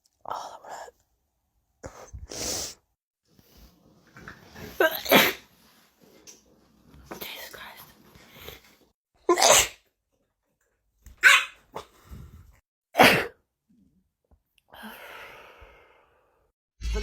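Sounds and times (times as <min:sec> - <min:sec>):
person sneezing: 0:09.3 - 0:09.8, 0:13.0 - 0:13.4.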